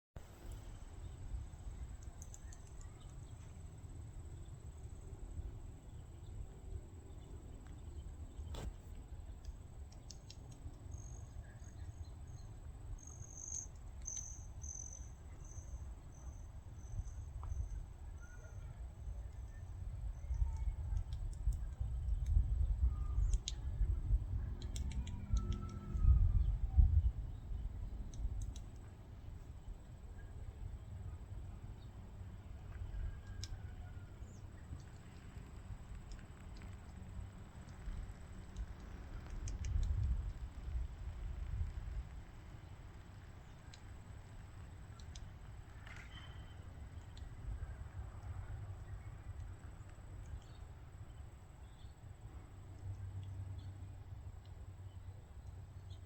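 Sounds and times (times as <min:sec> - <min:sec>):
low wind rumble: 0:00.2 - 0:56.0
bird and insect chirping: 0:10.9 - 0:18.6.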